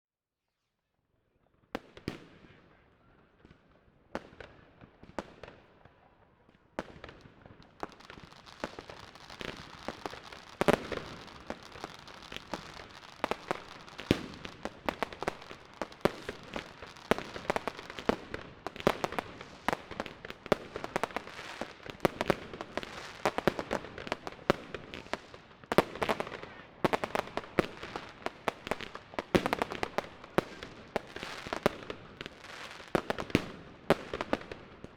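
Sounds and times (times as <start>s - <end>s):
fireworks bangs and crackling: 3.4s - 34.9s.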